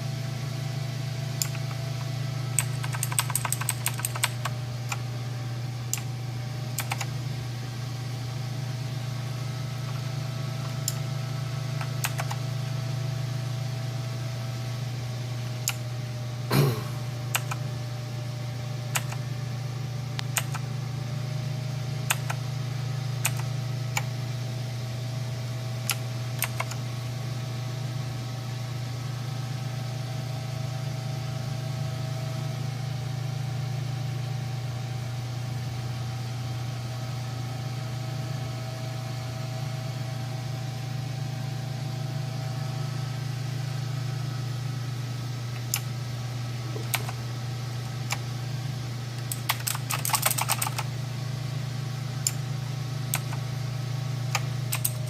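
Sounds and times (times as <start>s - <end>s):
steady low hum: 0.0s - 55.0s
mechanical keyboard clicks: 1.4s - 1.8s, 2.6s - 5.0s, 6.8s - 7.1s, 11.8s - 12.4s, 17.3s - 17.6s, 18.9s - 19.2s, 20.2s - 20.6s, 22.1s - 22.4s, 23.2s - 24.1s, 25.8s - 26.8s, 46.8s - 47.2s, 49.2s - 50.9s, 53.1s - 53.4s, 54.3s - 55.0s.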